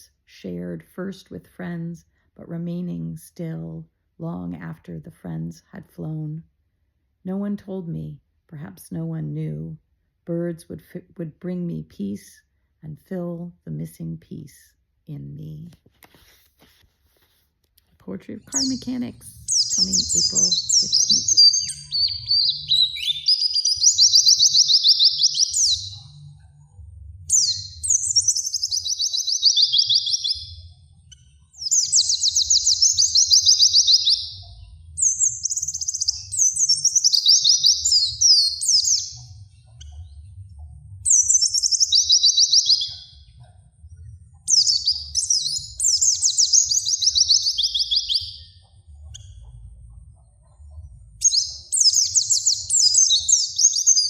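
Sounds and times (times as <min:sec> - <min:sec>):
songbird trilling: 0:18.5 - 0:26.2, 0:27.3 - 0:34.4, 0:35.0 - 0:39.9, 0:41.1 - 0:43.1, 0:44.5 - 0:49.3, 0:51.2 - 0:54.0.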